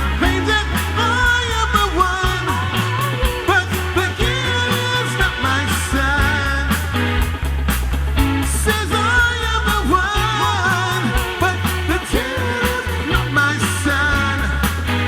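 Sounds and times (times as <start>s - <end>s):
rock band playing: 0.0s - 15.0s.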